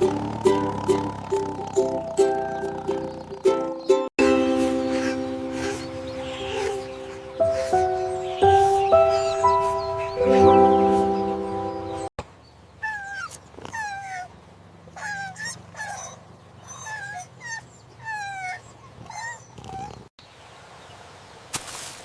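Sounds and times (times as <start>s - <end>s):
young animal whimpering: 4.8s - 10.9s, 12.8s - 14.3s, 15.0s - 20.1s.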